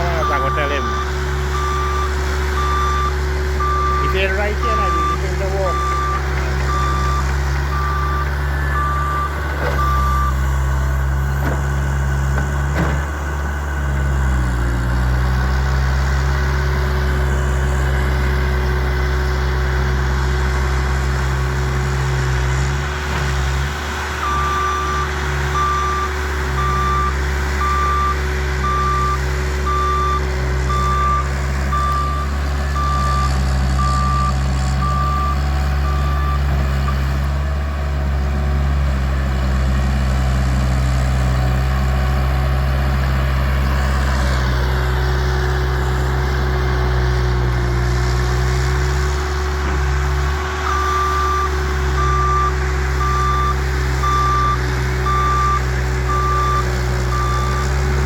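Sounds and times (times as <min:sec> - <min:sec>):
reversing alarm beeping: 0:00.0 - 0:11.7, 0:24.0 - 0:37.1, 0:50.6 - 0:57.8
loader engine running: 0:00.0 - 0:58.0.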